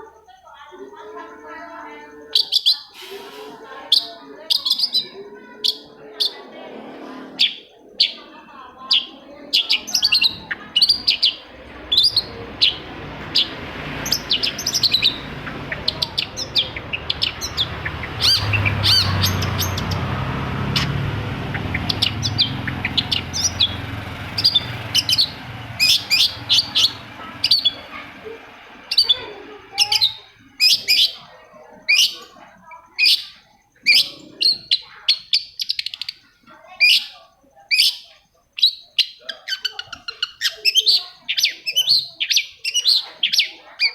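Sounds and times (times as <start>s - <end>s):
bird singing scratchy notes: 0.9s - 31.3s
low background rumble: 9.8s - 30.6s.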